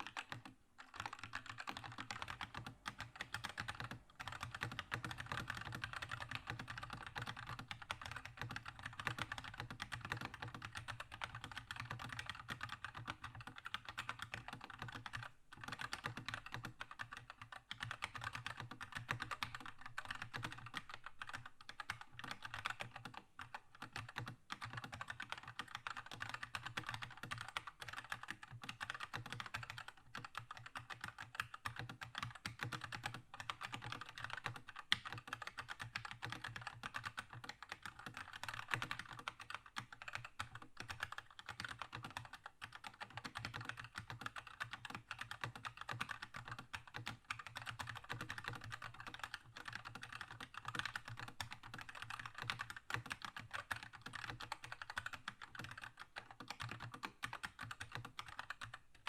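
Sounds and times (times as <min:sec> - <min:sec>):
fast typing on mechanical keyboard: 0:00.0 - 0:59.0.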